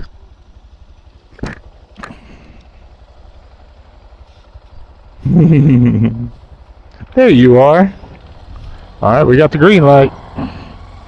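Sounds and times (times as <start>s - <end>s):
motorcycle engine idling: 0.0s - 11.0s
person speaking loudly: 9.0s - 10.2s.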